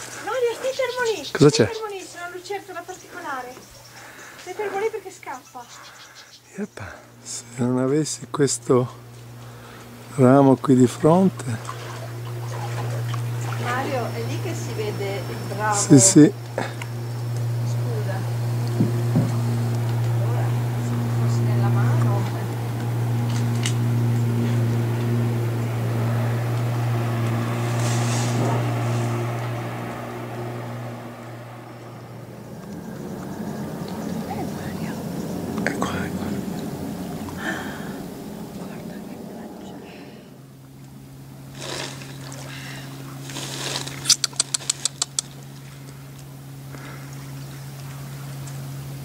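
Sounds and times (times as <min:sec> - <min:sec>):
low engine drone: 0:00.0 - 0:49.0
steady low hum: 0:00.0 - 0:49.0
sharp clicks: 0:44.0 - 0:45.4.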